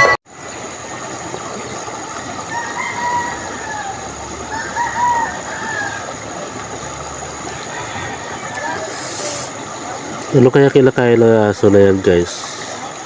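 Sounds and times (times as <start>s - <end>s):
rooster crowing: 2.4s - 6.2s, 7.5s - 9.5s
background hiss: 8.6s - 13.0s.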